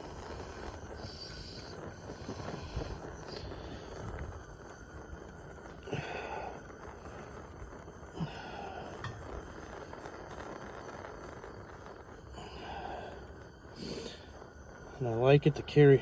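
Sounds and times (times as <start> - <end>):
low background noise: 0.0 - 16.0.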